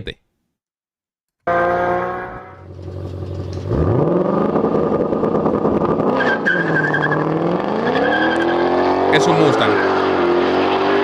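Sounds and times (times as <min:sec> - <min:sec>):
car engine revving: 0:01.4 - 0:11.0
tyres squealing: 0:07.9 - 0:10.0.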